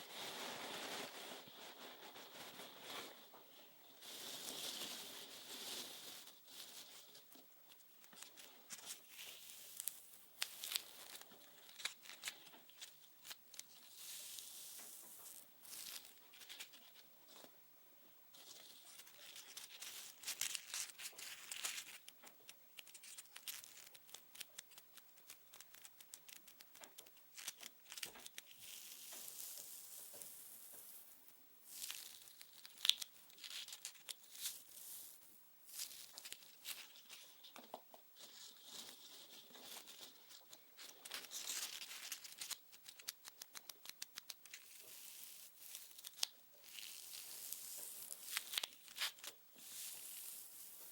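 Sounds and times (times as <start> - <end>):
crinkly scratchy rustling: 0.0 - 17.5, 18.3 - 50.9.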